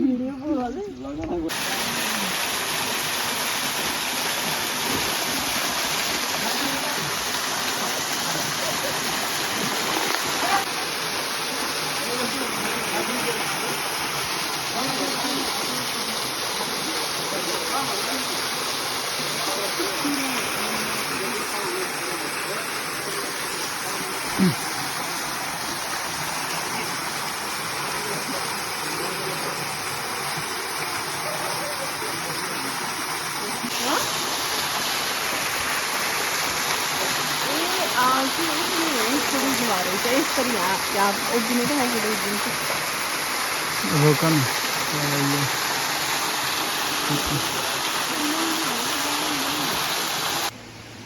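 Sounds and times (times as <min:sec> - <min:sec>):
stream water rushing: 0:01.4 - 0:50.6
faint voices: 0:06.4 - 0:25.5, 0:26.5 - 0:34.1.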